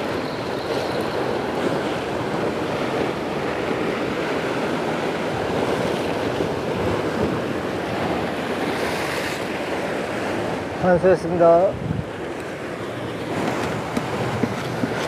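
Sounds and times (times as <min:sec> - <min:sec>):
sea surf on rocks: 0:00.0 - 0:15.0
wind buffeting microphone: 0:00.0 - 0:15.0.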